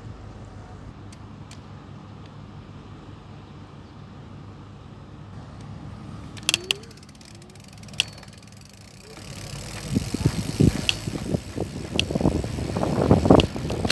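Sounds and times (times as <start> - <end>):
low engine rumble: 0.0 - 13.9
quick faint ticking: 6.3 - 13.9
sharp clicks: 6.4 - 13.9.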